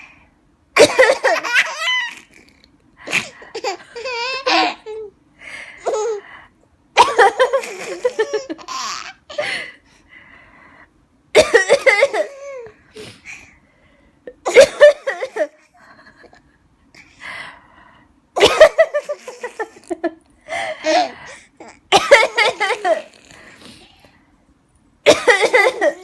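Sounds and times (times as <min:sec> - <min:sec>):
person coughing: 0:11.4 - 0:12.4, 0:14.3 - 0:15.6, 0:18.4 - 0:19.1, 0:21.9 - 0:23.2, 0:25.1 - 0:26.0.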